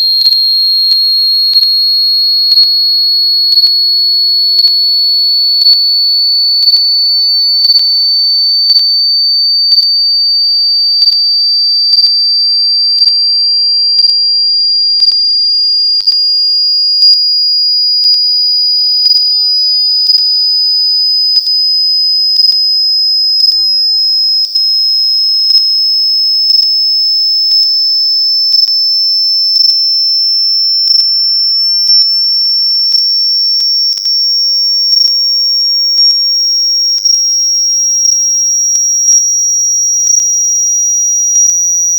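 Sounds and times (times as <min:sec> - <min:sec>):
rising sine tone: 0:15.0 - 0:16.0.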